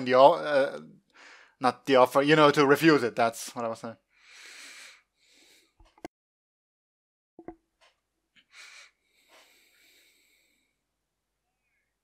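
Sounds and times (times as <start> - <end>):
person breathing in: 1.1 - 1.6, 4.2 - 5.8, 8.5 - 10.8.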